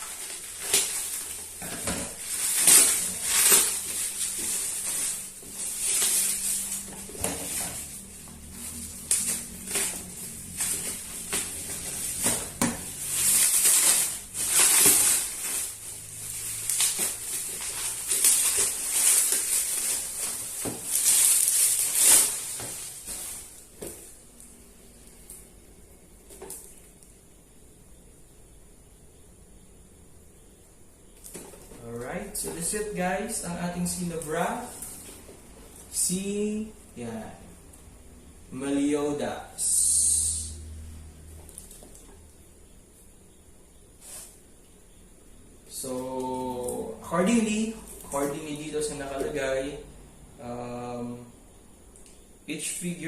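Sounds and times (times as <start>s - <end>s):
plastic packaging crinkling: 0.0s - 25.4s, 31.2s - 36.8s, 41.3s - 42.5s, 45.7s - 49.4s.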